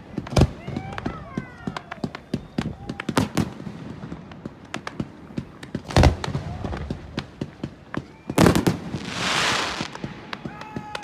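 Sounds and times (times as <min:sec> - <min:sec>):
fireworks popping and banging: 0:00.0 - 0:11.0
loud firework booms: 0:00.1 - 0:11.0
rushing hiss: 0:09.0 - 0:10.2.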